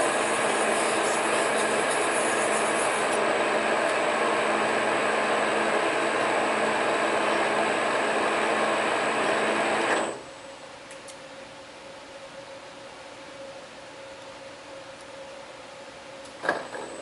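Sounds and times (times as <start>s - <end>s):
metal lathe machining: 0.0s - 10.3s
faint hum: 10.0s - 17.0s.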